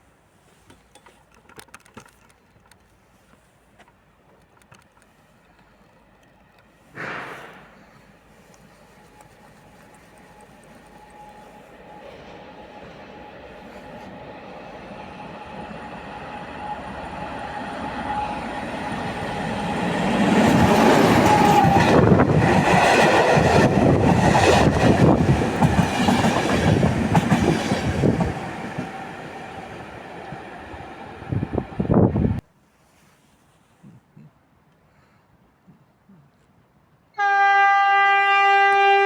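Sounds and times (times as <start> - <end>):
train passing close by: 5.4 - 32.4, 37.2 - 39.0.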